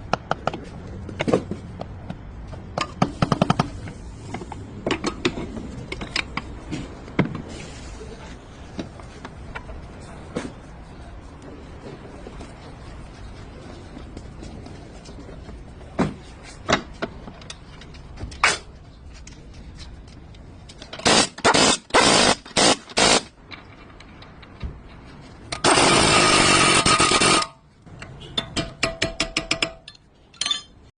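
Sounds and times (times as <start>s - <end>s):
power tool bursts: 25.6s - 27.5s.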